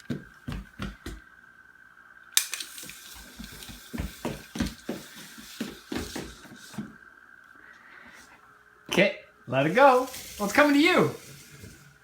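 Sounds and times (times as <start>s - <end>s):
tape measure blade hiss: 2.3s - 7.0s, 9.5s - 12.0s
tape measure click: 2.4s - 6.8s.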